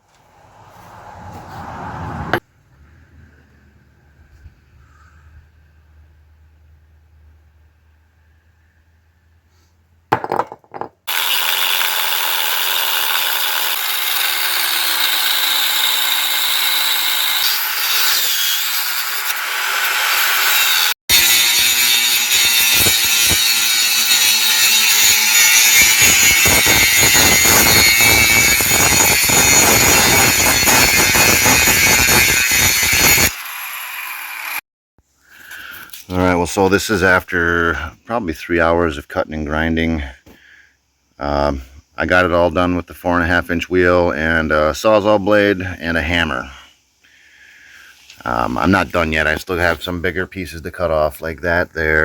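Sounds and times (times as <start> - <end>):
power tool cutting steel: 11.1 - 34.6.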